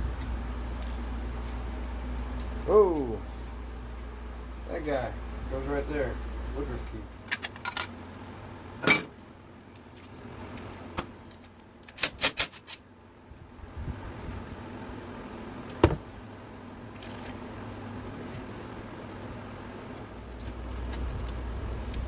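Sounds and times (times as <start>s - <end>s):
low steady hum: 0.0s - 22.0s
metal tools clinking: 17.0s - 17.4s, 20.1s - 22.0s.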